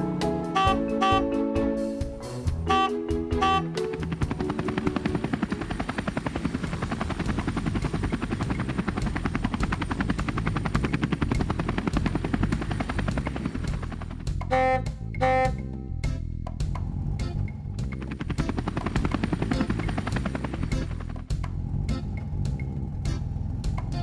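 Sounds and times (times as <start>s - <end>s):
helicopter rotors chopping: 2.4s - 14.4s, 17.8s - 21.4s.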